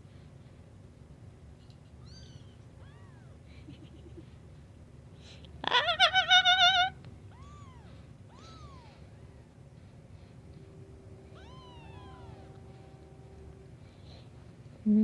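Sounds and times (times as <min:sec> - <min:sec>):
kittens mewing: 0:02.0 - 0:04.2, 0:05.6 - 0:09.6, 0:11.3 - 0:12.6.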